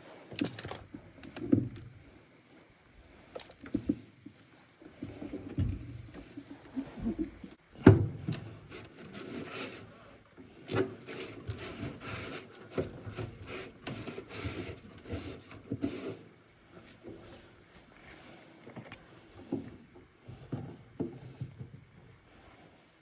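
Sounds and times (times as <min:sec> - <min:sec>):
scraping and rubbing: 0:10.8 - 0:17.3.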